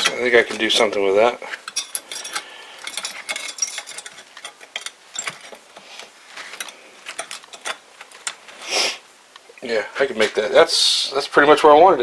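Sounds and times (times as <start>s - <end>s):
small metal parts clinking: 0.0s - 8.6s.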